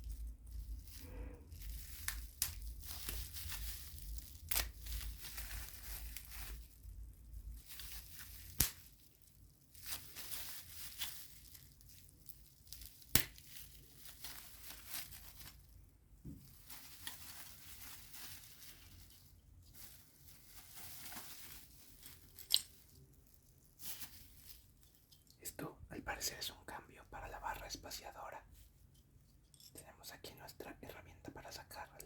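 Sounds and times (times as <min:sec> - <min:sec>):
packaging rustling and crinkling: 0:00.0 - 0:25.3.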